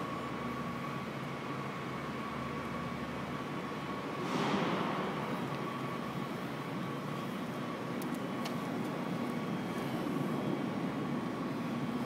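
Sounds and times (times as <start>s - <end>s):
faint steady whine: 0.0s - 12.0s
heavy machinery engine rumble: 3.2s - 12.0s.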